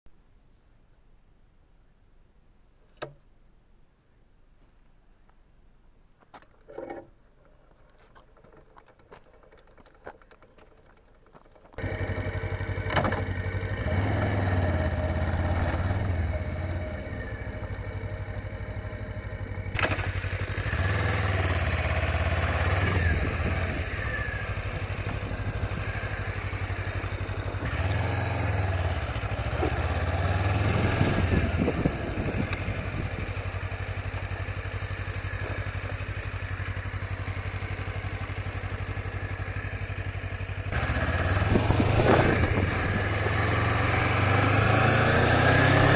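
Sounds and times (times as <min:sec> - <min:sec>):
motorcycle engine revving: 0:11.8 - 0:45.9.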